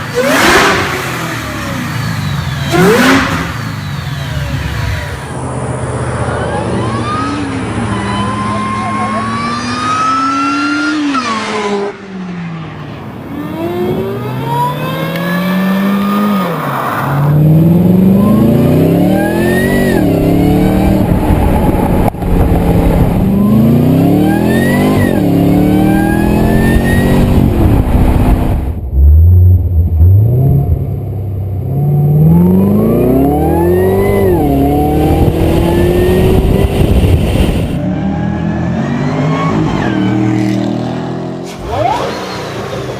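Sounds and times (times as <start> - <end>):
supercharger whine: 0.0 - 8.1
car engines revving: 0.0 - 42.9.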